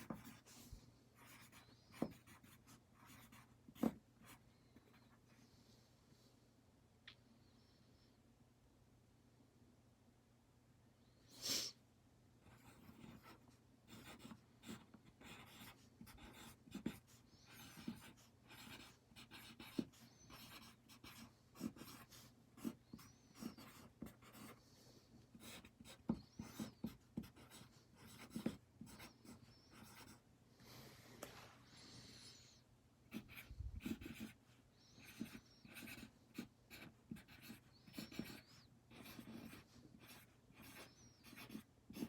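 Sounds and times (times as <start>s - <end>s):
pen scratching while writing: 0.0s - 0.5s, 1.2s - 5.0s, 12.5s - 24.6s, 25.4s - 30.2s, 33.1s - 34.4s, 35.0s - 42.0s.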